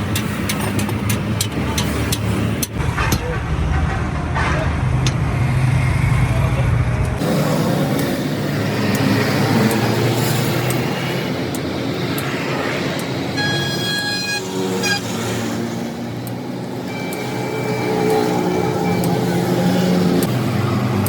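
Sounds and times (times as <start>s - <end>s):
road traffic passing: 0.0s - 21.0s
vehicle horn: 13.4s - 15.2s.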